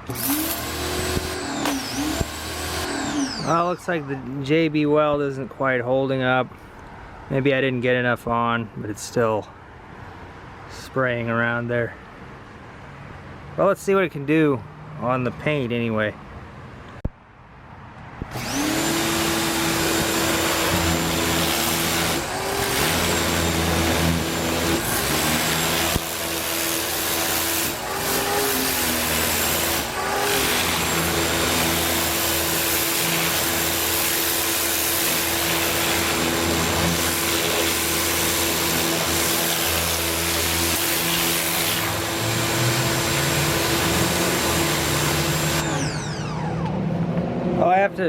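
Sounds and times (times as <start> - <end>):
pressure washer motor whine: 0.0 - 4.3, 18.3 - 47.6
water spraying: 24.8 - 45.6.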